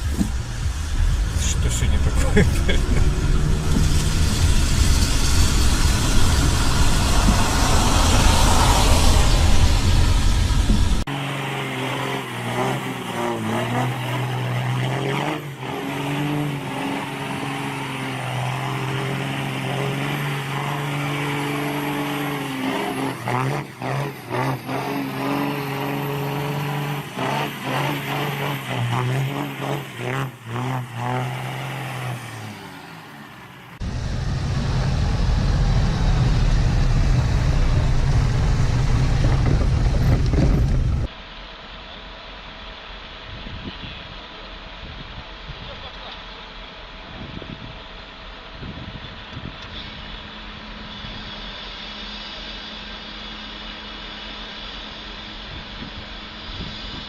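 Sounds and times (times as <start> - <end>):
deep rumble of heavy machinery: 0.0 - 11.1, 33.8 - 41.1
vehicle engine running: 0.0 - 11.2, 33.8 - 41.1.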